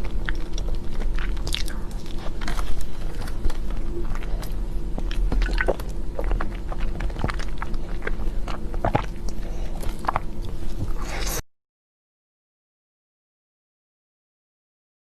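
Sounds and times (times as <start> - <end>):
chewing cake mouth sounds: 0.0 - 11.4
steady low hum: 0.0 - 11.4.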